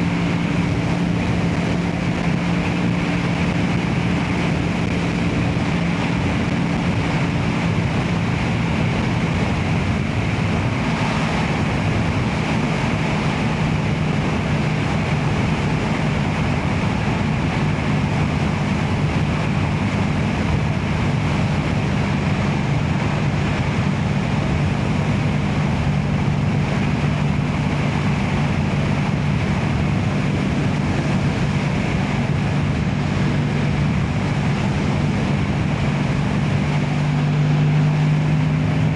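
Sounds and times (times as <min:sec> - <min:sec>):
motorcycle engine cruising: 0:00.0 - 0:38.9
wind rushing on microphone: 0:00.0 - 0:38.9.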